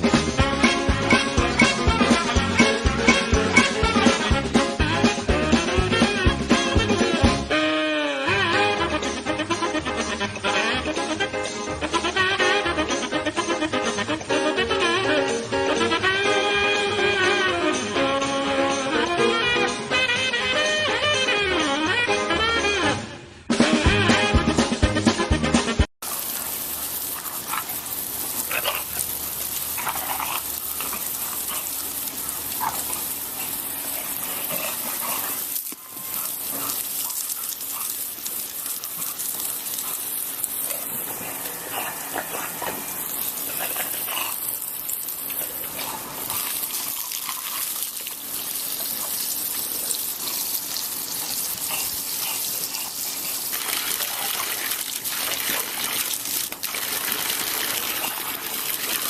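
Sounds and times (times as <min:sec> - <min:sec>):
water spraying with a hiss: 0:26.0 - 0:59.0
dog sounds: 0:26.1 - 0:59.0.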